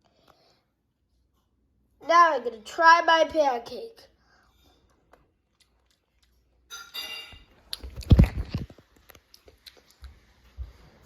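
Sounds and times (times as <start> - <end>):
child chewing food: 4.2 - 11.0.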